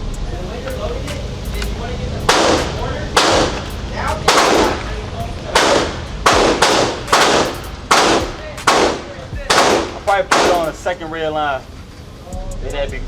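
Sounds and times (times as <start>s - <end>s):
gunshots echoing indoors: 2.3s - 10.9s.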